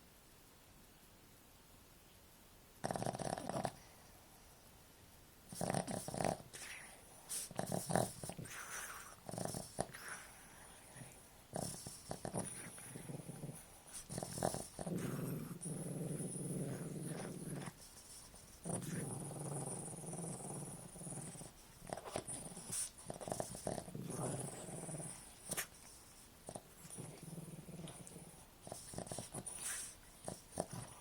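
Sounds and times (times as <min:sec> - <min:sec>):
dog snoring: 0:02.8 - 0:03.9, 0:05.5 - 0:31.0
dog snorting and snuffling: 0:02.8 - 0:03.9, 0:05.5 - 0:31.0.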